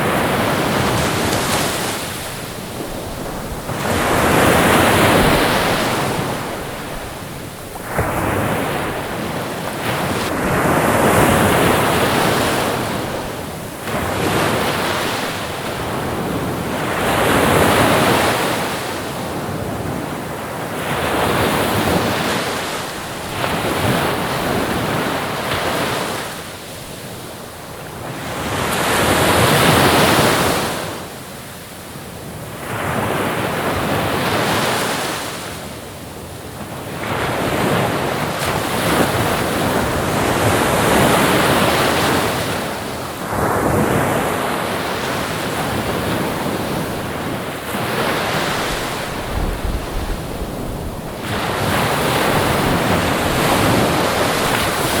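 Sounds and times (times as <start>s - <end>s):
ocean waves washing in: 0.0s - 19.1s.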